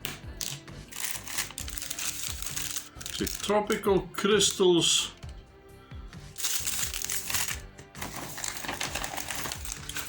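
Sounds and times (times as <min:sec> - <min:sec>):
background music: 0:00.0 - 0:10.0
plastic sachets crinkling: 0:00.4 - 0:03.8, 0:06.4 - 0:10.0.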